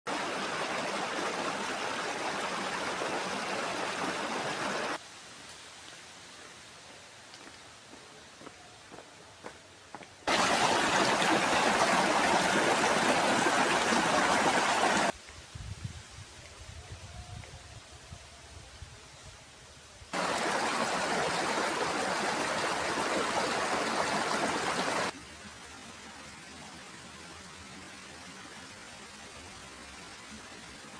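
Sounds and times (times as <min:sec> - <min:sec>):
stream water rushing: 0:00.1 - 0:05.0, 0:10.3 - 0:15.2, 0:20.2 - 0:25.2.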